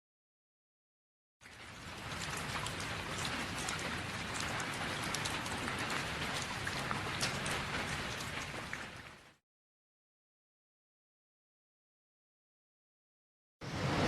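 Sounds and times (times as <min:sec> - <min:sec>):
rain falling: 0:01.4 - 0:09.4.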